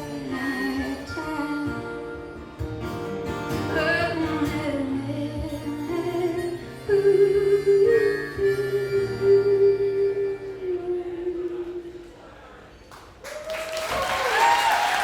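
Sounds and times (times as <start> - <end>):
live acoustic instrumental song: 0.0 - 13.2.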